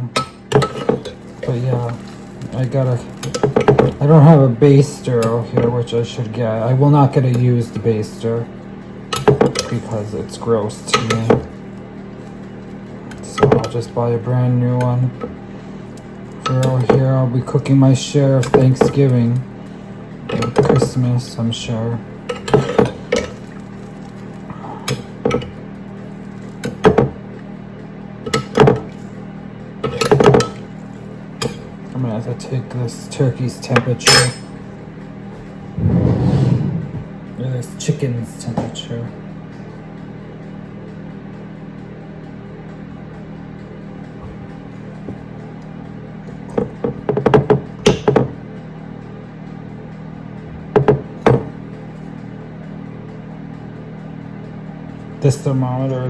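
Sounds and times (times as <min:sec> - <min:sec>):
steady low hum: 0:00.0 - 0:56.0
cookware and utensils clinking: 0:33.8 - 0:34.6.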